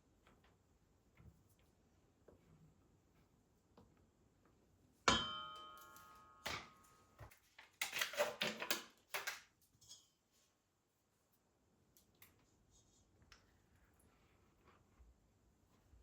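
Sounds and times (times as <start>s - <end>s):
kitchenware ringing clang: 5.1s - 6.8s.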